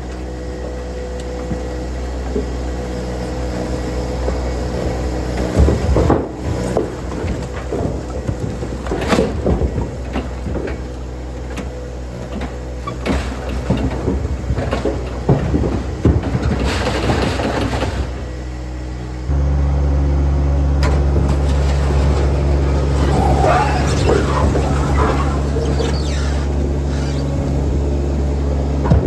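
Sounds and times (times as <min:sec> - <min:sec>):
engine running: 0:00.0 - 0:29.0.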